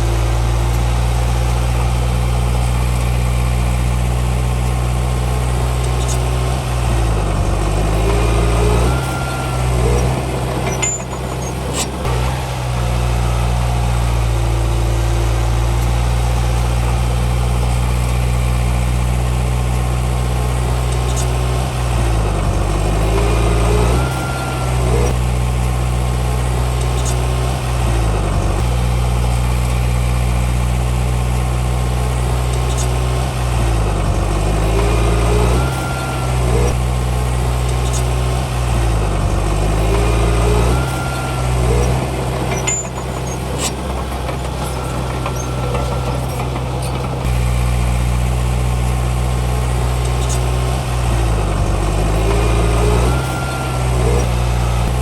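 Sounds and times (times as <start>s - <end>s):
bulldozer diesel engine running: 0.0s - 55.0s
metallic clanks: 5.8s - 12.9s, 37.6s - 47.4s.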